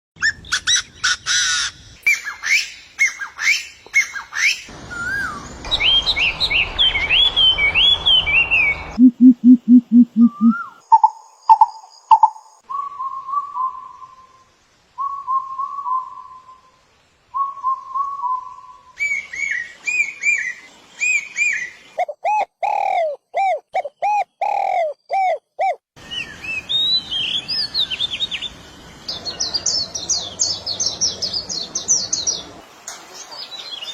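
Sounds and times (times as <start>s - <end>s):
birds chirping and whistling: 0.2s - 9.2s, 17.4s - 28.5s
swooping bird notes: 4.4s - 10.8s
low rapid bird pulses: 4.7s - 11.0s.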